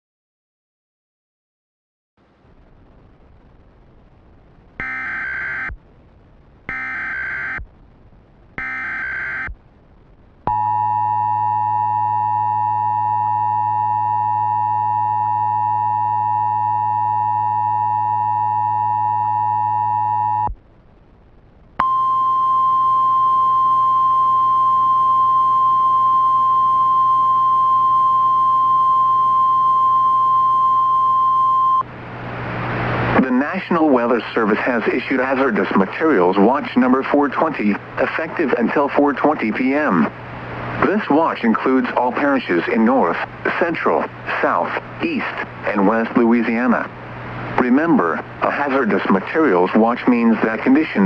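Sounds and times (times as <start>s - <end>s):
two-tone attention signal: 4.8s - 5.7s, 6.7s - 7.6s, 8.6s - 9.5s
digital data bursts: 4.8s - 5.8s, 6.7s - 7.7s, 8.6s - 9.6s
steady warning tone: 4.8s - 5.8s, 6.7s - 7.7s, 8.6s - 9.6s, 10.5s - 20.5s, 21.8s - 31.9s.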